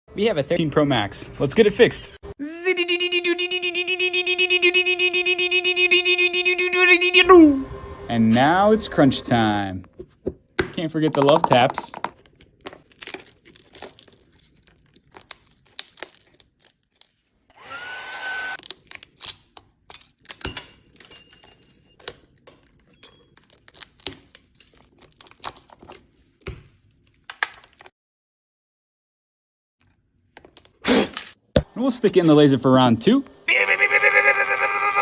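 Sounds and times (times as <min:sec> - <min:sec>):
small tools tapping and crunching glass: 0:12.8 - 0:17.1, 0:18.6 - 0:27.9.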